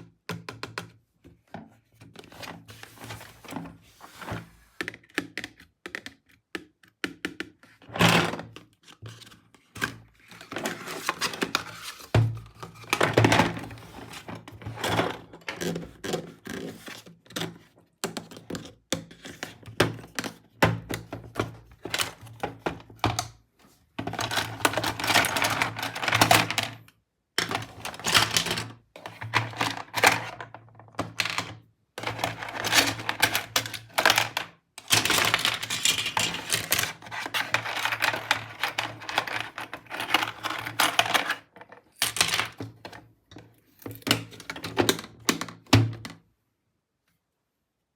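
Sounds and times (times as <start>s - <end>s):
plastic toy parts rattling: 24.0s - 26.8s, 27.4s - 42.9s.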